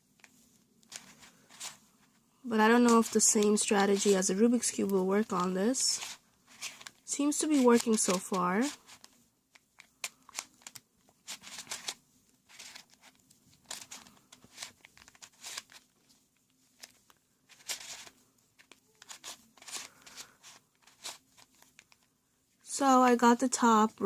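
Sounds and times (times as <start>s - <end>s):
plastic puzzle clicking: 7.6s - 15.8s, 16.8s - 22.1s.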